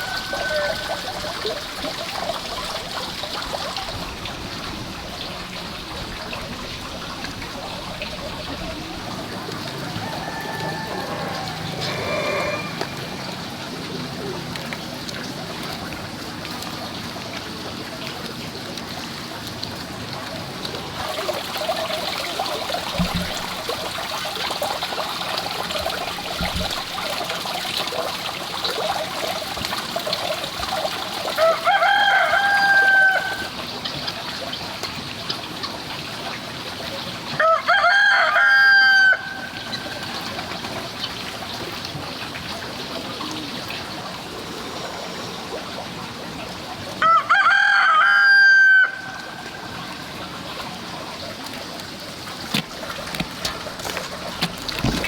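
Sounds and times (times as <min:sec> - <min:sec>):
rooster crowing: 0:00.0 - 0:01.5, 0:09.8 - 0:13.4, 0:31.4 - 0:33.5, 0:37.4 - 0:40.0, 0:47.0 - 0:49.6
steady background hiss: 0:42.9 - 0:47.0.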